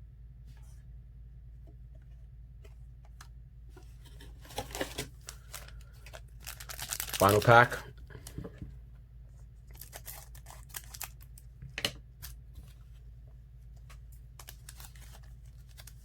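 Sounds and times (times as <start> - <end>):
card pack wrapper tearing and crinkling: 4.2 - 7.8, 9.7 - 11.4, 14.4 - 16.0.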